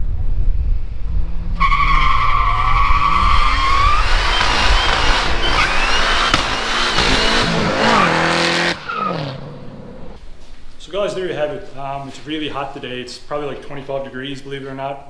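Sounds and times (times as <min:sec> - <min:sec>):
car engine accelerating hard: 0:01.6 - 0:10.2.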